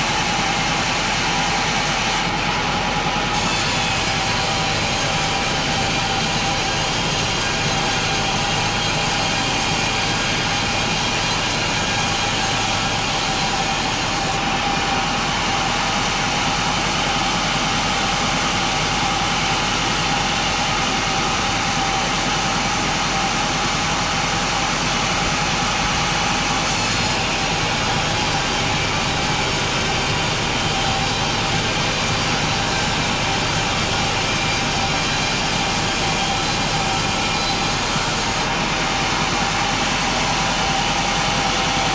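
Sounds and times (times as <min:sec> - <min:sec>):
chainsaw sawing through log: 0:03.2 - 0:41.9.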